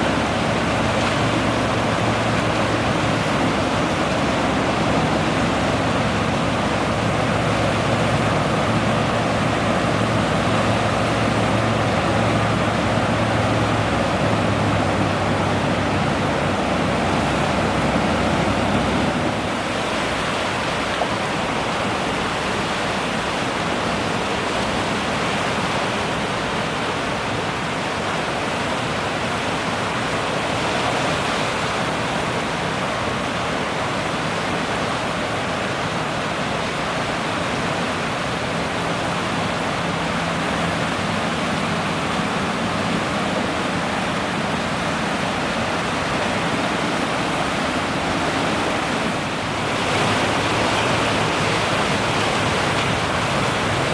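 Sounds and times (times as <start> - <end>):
steady outdoor rushing: 0.0 - 19.9, 38.8 - 53.9.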